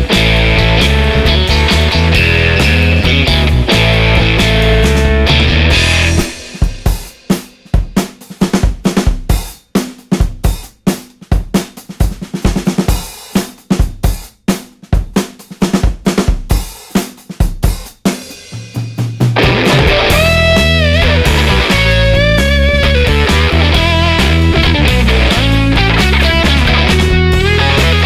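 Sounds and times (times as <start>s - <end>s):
rock drum kit playing: 0.0s - 28.0s.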